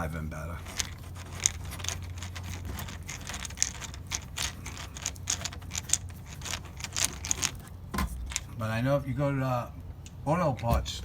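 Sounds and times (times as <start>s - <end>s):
steady low hum: 0.0s - 11.0s
hand tools clicking and rattling: 0.6s - 8.5s.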